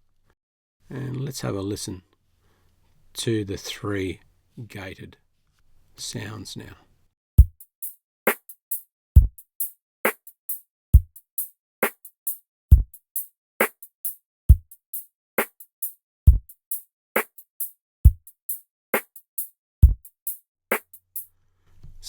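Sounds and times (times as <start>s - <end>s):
hi-hat ticks: 7.4s - 21.3s
kick drum hits: 19.8s - 20.0s.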